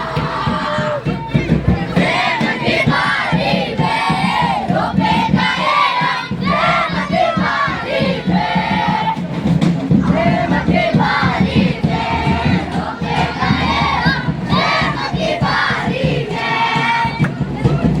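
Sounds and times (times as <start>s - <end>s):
children shouting: 0.0s - 9.3s, 10.0s - 18.0s
children singing together: 0.0s - 18.0s
rhythmic drumming: 0.0s - 18.0s.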